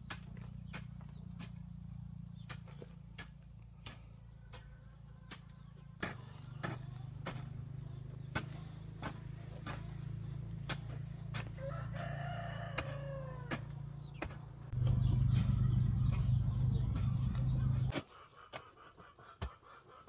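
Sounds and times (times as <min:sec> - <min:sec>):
low steady hum: 0:14.7 - 0:17.9.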